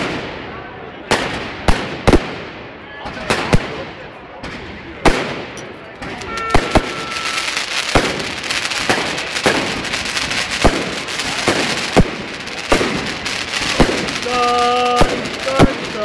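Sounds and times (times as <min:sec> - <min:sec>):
fireworks bangs: 0:00.0 - 0:16.0
fireworks crackling hiss: 0:03.2 - 0:16.0.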